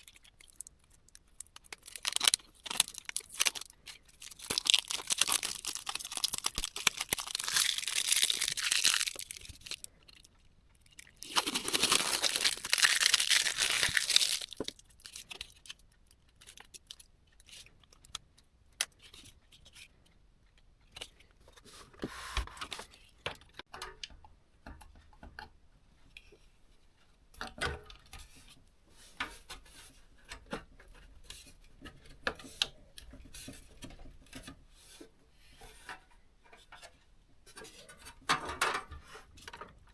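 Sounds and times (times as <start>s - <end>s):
packaging tearing and crinkling: 0.0s - 9.9s, 11.0s - 15.3s
small parts clicking: 0.0s - 10.2s.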